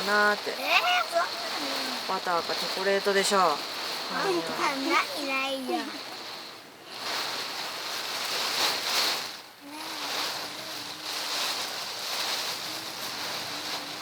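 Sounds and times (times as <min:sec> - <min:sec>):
heavy rain pounding on van roof: 0:00.0 - 0:14.0.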